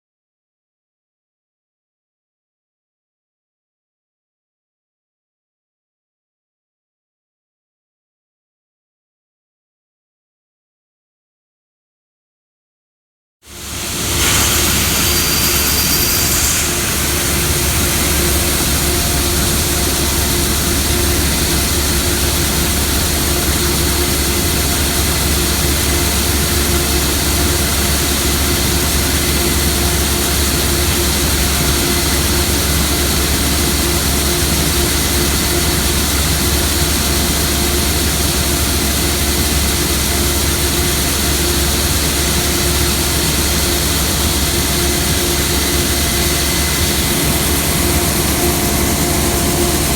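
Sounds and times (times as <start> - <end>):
combine harvester droning: 13.5 - 40.2, 42.6 - 49.9.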